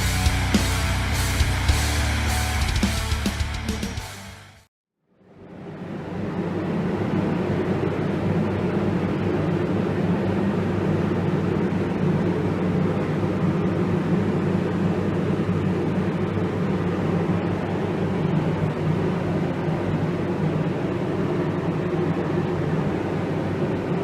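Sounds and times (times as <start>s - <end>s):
low fan hum: 5.2s - 24.0s.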